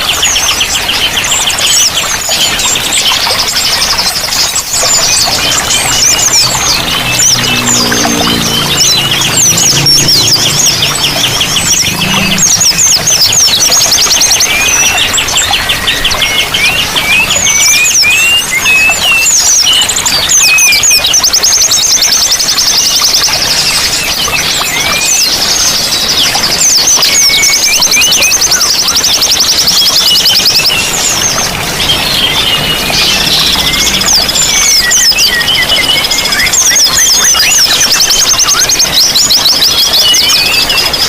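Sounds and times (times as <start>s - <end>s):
running water rushing: 0.0s - 41.0s
songbirds trilling and chirping: 0.0s - 41.0s.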